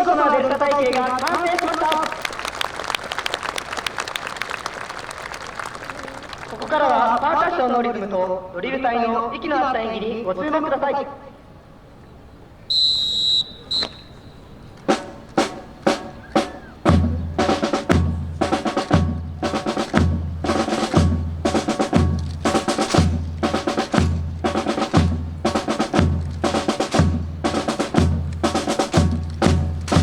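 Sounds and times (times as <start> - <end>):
drill whistle blasts: 12.7 - 14.8
snare drum strokes: 14.8 - 30.0.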